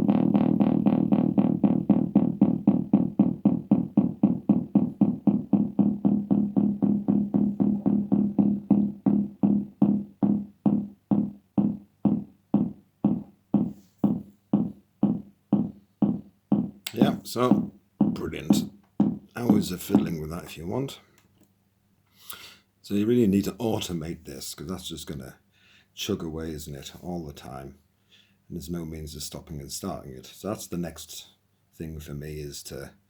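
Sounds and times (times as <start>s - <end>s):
low electronic drum pulse: 0.0s - 20.2s.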